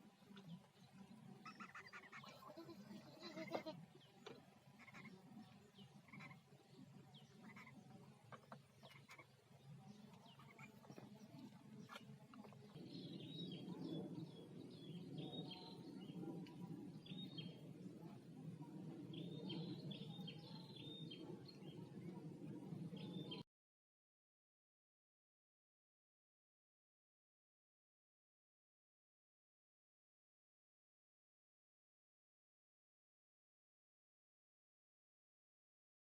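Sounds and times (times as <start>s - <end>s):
bird chirps: 4.0s - 6.5s, 7.1s - 17.6s.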